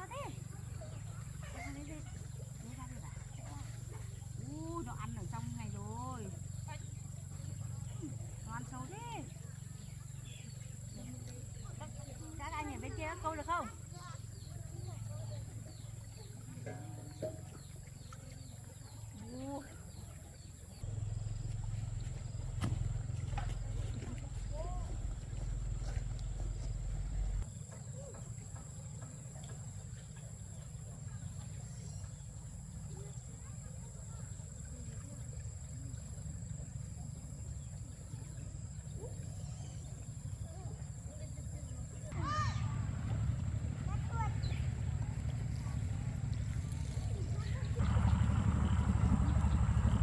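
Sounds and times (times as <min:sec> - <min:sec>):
faint distant voices: 0:00.0 - 0:50.0
low steady rumble: 0:20.5 - 0:27.6, 0:34.1 - 0:50.0.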